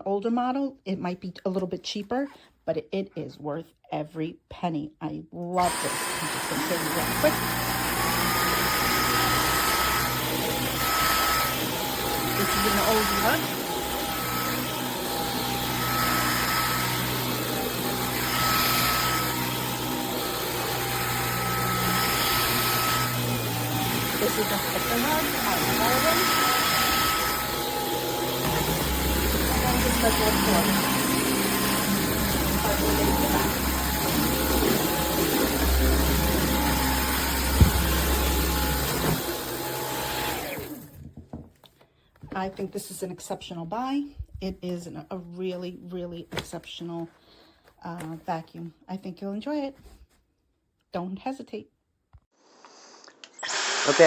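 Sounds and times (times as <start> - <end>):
vacuum cleaner motor drone: 5.6 - 40.9.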